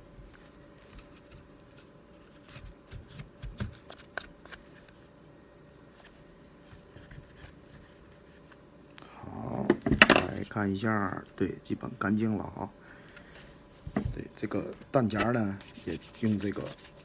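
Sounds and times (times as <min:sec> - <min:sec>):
cloth rustling while wiping: 0:14.1 - 0:17.0.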